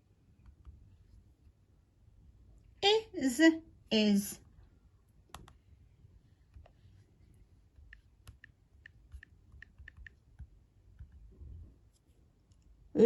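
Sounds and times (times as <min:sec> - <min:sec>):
computer keyboard keystrokes: 0:05.3 - 0:05.6, 0:07.8 - 0:11.2.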